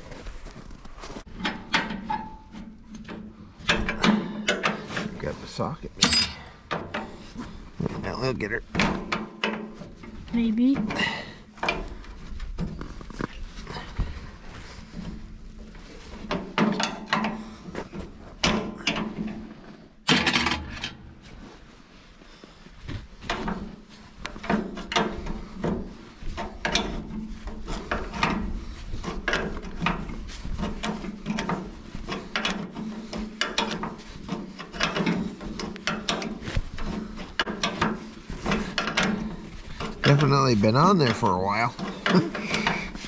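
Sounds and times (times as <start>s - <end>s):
loud metal clank: 6.0s - 6.6s.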